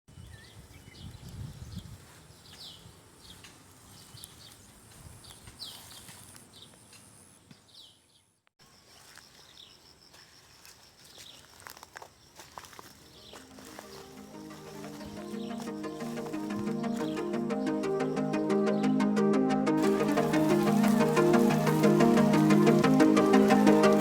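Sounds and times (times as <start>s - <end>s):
bird calling in high notes: 13.2s - 24.0s.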